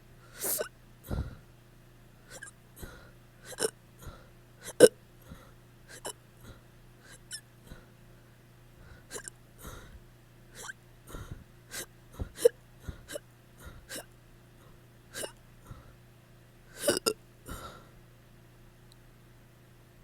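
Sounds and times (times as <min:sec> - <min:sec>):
breathy gasp: 0:00.2 - 0:01.4, 0:02.3 - 0:07.9, 0:08.8 - 0:10.0, 0:10.6 - 0:16.0, 0:16.7 - 0:17.9
person hiccupping: 0:00.4 - 0:00.7, 0:02.3 - 0:02.6, 0:03.5 - 0:03.8, 0:04.6 - 0:05.0, 0:05.9 - 0:06.2, 0:09.1 - 0:09.4, 0:10.6 - 0:10.8, 0:11.7 - 0:13.2, 0:15.2 - 0:15.4, 0:16.8 - 0:17.2.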